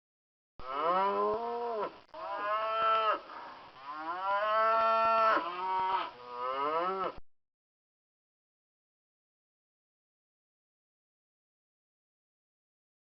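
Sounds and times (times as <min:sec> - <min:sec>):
cows mooing: 0:00.6 - 0:03.2, 0:03.8 - 0:07.2.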